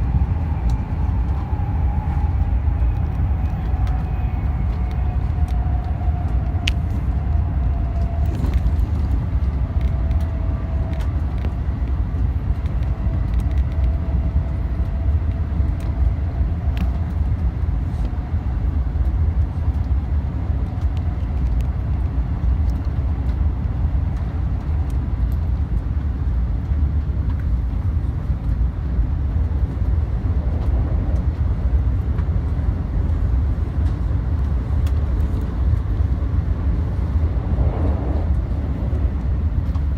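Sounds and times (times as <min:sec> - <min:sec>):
faint whine falling in pitch: 0:00.0 - 0:11.2
train cabin low rumble: 0:00.0 - 0:39.9.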